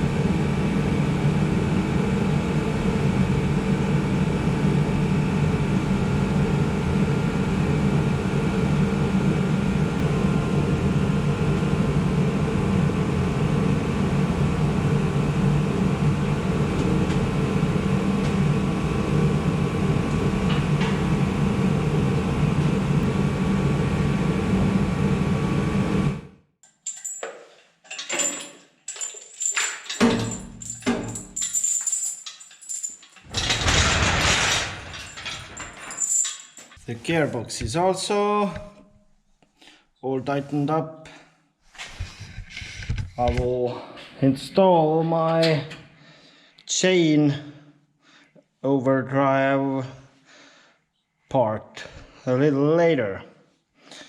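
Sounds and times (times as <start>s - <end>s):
mechanical hum: 0.0s - 26.4s, 28.0s - 39.2s.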